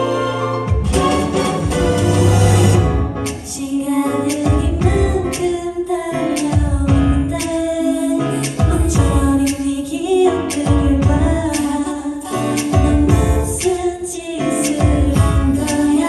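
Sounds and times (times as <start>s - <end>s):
heavy bass beats: 0.6s - 3.5s, 4.3s - 5.5s, 6.5s - 7.5s, 8.4s - 9.6s, 10.5s - 11.6s, 12.5s - 13.9s, 14.8s - 15.9s
women singing pop: 3.3s - 16.0s.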